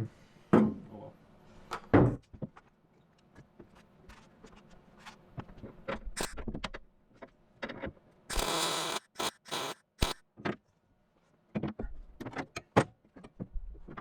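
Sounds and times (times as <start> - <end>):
welder crackling: 8.3 - 10.2.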